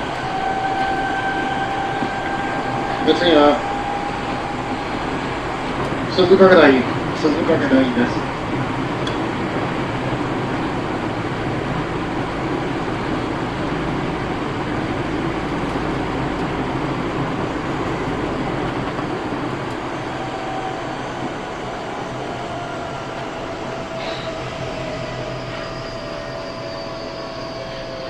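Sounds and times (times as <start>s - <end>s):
thin steady whine: 0.0s - 8.2s
electric train rumbling: 0.0s - 28.0s.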